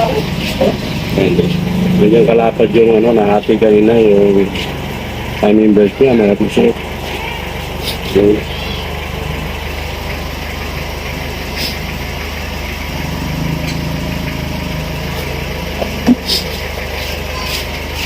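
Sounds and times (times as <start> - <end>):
engine idling: 0.0 - 18.0.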